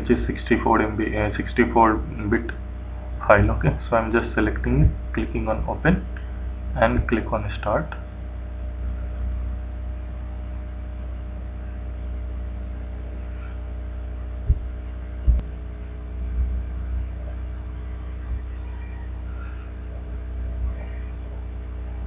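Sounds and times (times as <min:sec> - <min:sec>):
low electrical hum: 0:00.0 - 0:22.0
dull thumps: 0:14.4 - 0:15.6.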